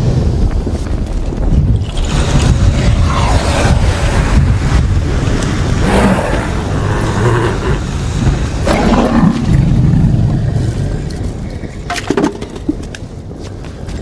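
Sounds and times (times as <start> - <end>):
deep steady rumble: 0.0 - 11.8
dragon growls: 2.4 - 11.2.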